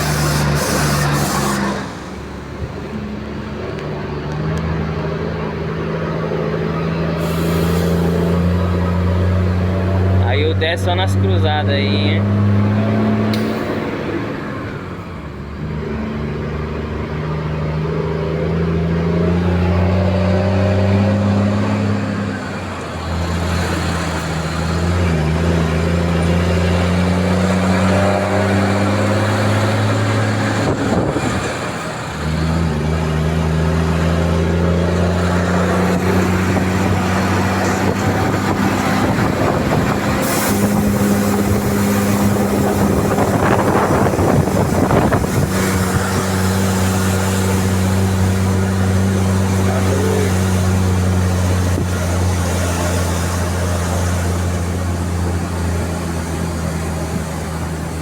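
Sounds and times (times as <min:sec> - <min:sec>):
truck diesel engine accelerating: 0:00.0 - 0:58.0
brief hiss: 0:07.2 - 0:08.2.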